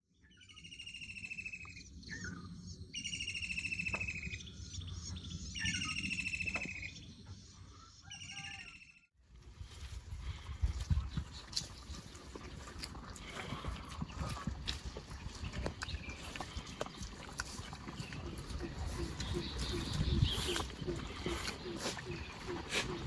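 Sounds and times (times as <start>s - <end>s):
songbird singing trilled phrases: 0.2s - 9.0s.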